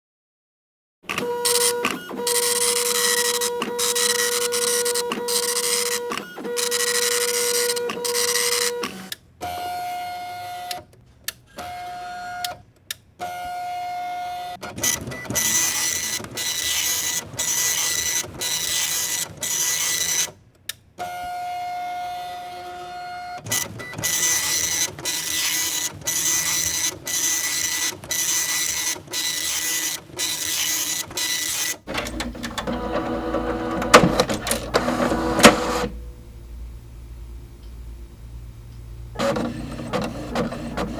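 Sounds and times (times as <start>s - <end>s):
printer motor whine: 1.1s - 10.8s, 13.3s - 20.4s, 21.1s - 40.9s
printer head passes: 23.4s - 36.8s, 38.6s - 40.9s.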